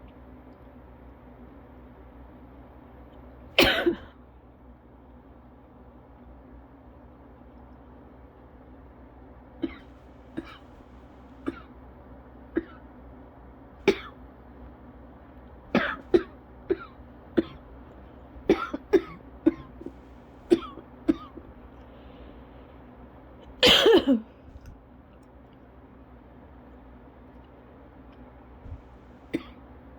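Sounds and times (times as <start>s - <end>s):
person coughing: 3.6s - 4.2s, 9.6s - 10.8s, 11.4s - 11.7s, 12.6s - 12.8s, 13.9s - 14.2s, 15.8s - 17.6s, 18.5s - 21.5s, 23.6s - 24.7s, 29.3s - 29.6s.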